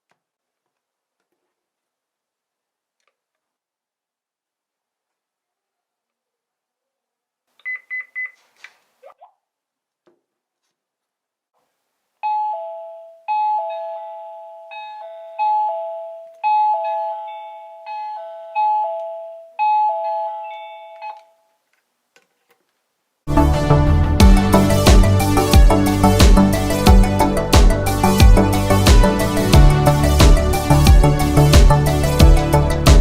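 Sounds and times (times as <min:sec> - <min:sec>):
two-note ding-dong chime: 0:12.2 - 0:21.2.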